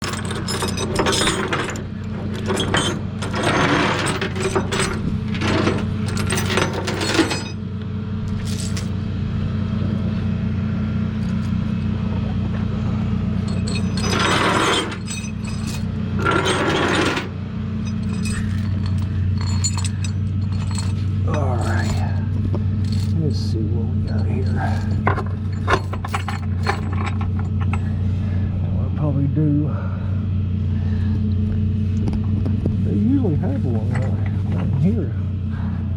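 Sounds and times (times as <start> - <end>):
clinking and scraping handling noise: 0.0 - 7.6, 8.3 - 9.0, 13.4 - 28.1, 33.5 - 35.0
vehicle engine humming: 0.0 - 35.9.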